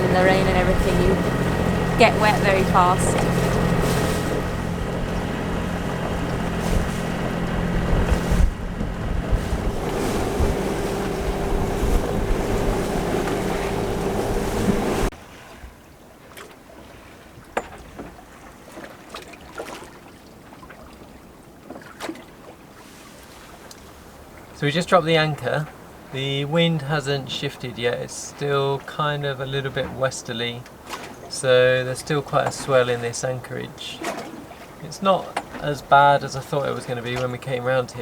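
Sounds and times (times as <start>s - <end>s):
boat engine drone: 0.0s - 15.1s
water noise: 0.0s - 38.0s
wind: 0.0s - 38.0s.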